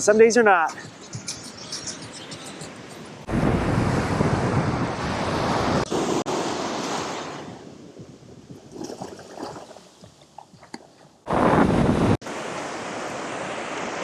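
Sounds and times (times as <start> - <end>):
wind noise on microphone: 3.2 - 12.2
waves washing on beach: 3.3 - 7.8, 11.3 - 14.0.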